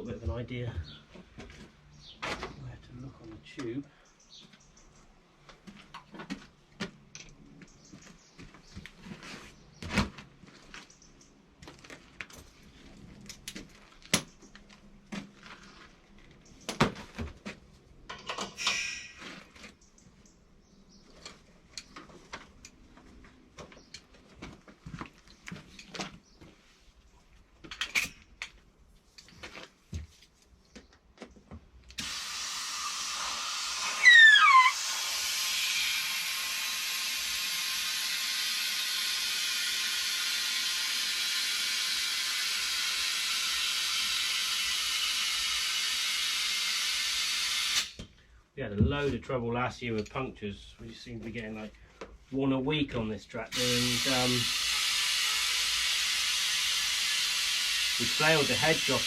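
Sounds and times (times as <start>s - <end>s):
clicks and knocks of handling tools: 18.1s - 20.4s, 21.1s - 26.6s, 27.6s - 30.1s
air hissing: 18.6s - 19.2s, 32.0s - 48.0s, 53.5s - 59.0s
falling squeal: 18.6s - 19.3s, 33.6s - 35.3s.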